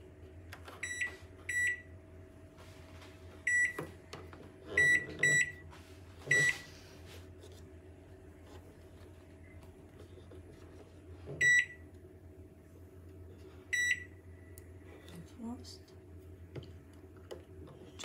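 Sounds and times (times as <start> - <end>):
faint steady hum: 0.0 - 18.0
microwave keypad beeps: 0.8 - 1.9, 3.4 - 3.8, 4.8 - 5.6, 6.3 - 6.6, 11.4 - 11.8, 13.7 - 14.2.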